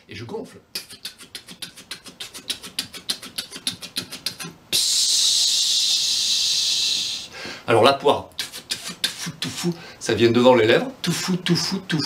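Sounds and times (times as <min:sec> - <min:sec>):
mouth-made air puffs: 0:00.8 - 0:07.6, 0:08.3 - 0:10.0
loud steady air hiss: 0:04.7 - 0:07.7.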